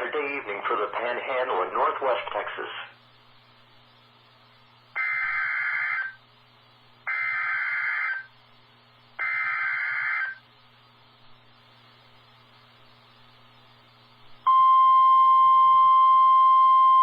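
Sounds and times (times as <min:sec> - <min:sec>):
faint radio hum: 0:00.0 - 0:07.0.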